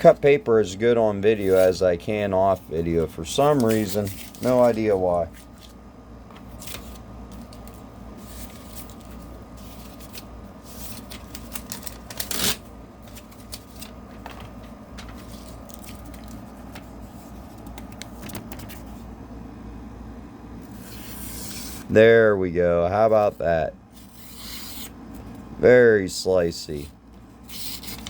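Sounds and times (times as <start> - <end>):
paper rustling: 2.5 - 19.1, 26.7 - 28.0
knife slicing paper: 27.5 - 28.0.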